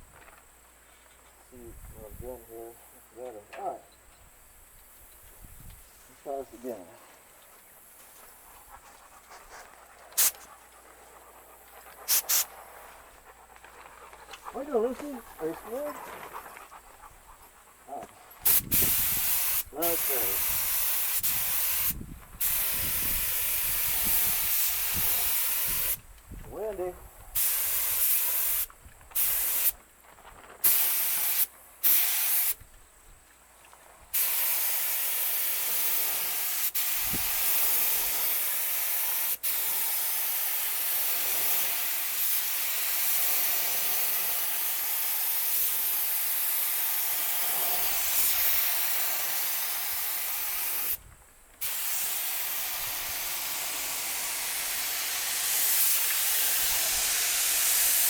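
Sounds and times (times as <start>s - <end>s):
paint spray gun hissing: 10.1s - 10.5s, 12.0s - 12.5s, 18.4s - 26.0s, 27.4s - 29.8s, 30.6s - 32.6s, 34.1s - 51.0s, 51.6s - 58.0s.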